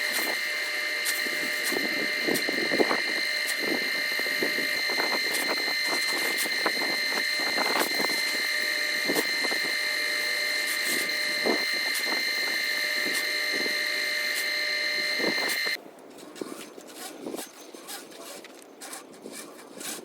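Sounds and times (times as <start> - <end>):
drain cleaning machine whine: 0.0 - 15.8.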